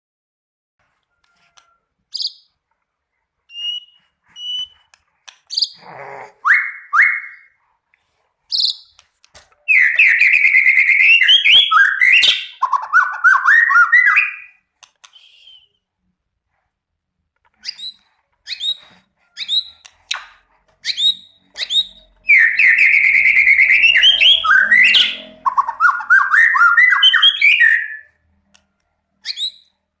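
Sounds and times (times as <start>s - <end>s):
songbird chirps and trills: 0.9s - 2.6s, 8.5s - 14.5s, 17.6s - 28.1s.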